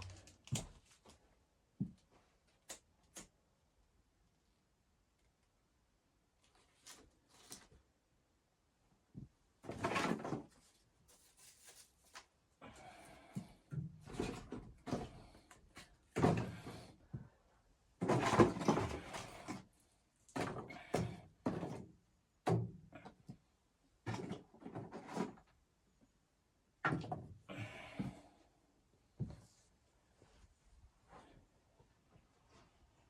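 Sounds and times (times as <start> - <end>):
objects handled knocking and scraping: 18.0 - 19.6, 24.0 - 25.6.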